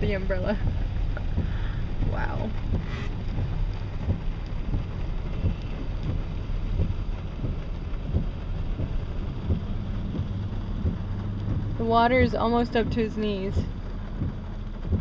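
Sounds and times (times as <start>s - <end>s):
rain: 0.0s - 15.0s
small irregular knocks: 2.6s - 15.0s.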